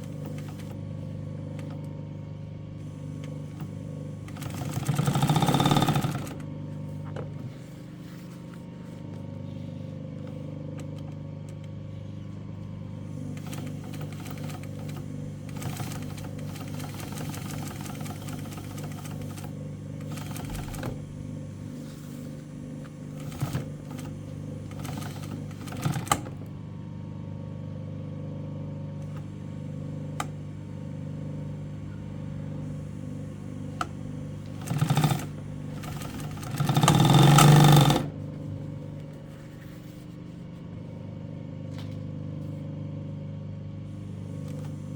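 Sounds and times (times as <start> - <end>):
sewing machine motor humming: 0.0 - 8.2, 12.3 - 26.6, 29.0 - 39.1, 43.9 - 44.9.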